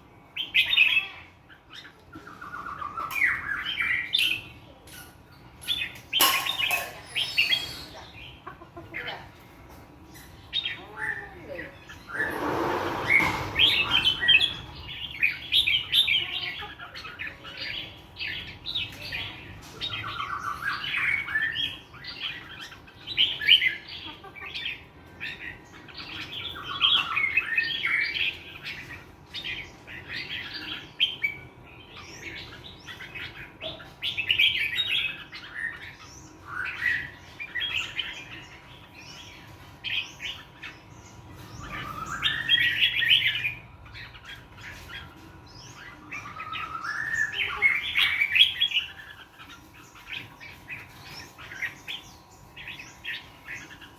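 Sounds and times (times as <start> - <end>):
songbird chirping: 0.0 - 53.9
rough burst of noise: 12.1 - 14.8.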